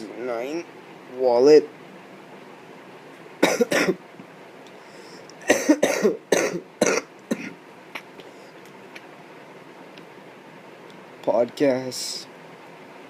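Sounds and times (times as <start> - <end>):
person coughing: 3.4 - 4.0, 5.4 - 7.6.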